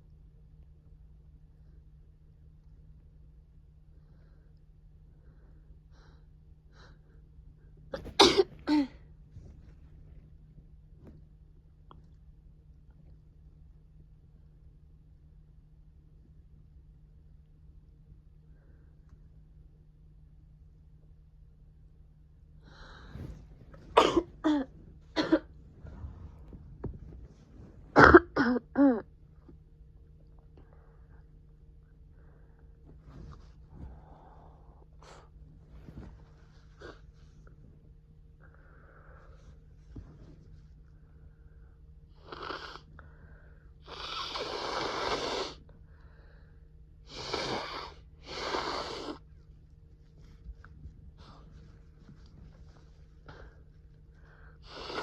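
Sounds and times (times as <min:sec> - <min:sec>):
person coughing: 0:08.0 - 0:09.0, 0:23.9 - 0:25.6, 0:28.0 - 0:29.0
wheezy breathing: 0:41.4 - 0:49.3, 0:53.2 - 0:55.0.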